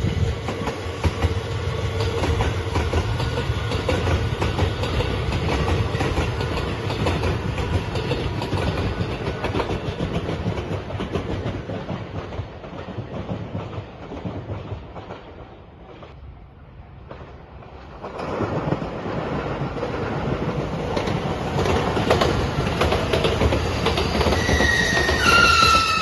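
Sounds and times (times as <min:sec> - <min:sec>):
train wheels clattering over rail joints: 0:00.3 - 0:16.1, 0:18.0 - 0:26.0.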